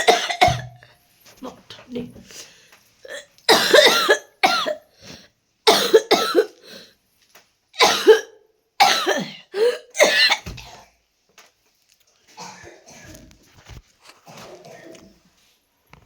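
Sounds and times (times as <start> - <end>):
person coughing: 0.0 - 0.8, 3.1 - 4.8, 5.7 - 6.6, 7.8 - 10.9, 12.4 - 13.3.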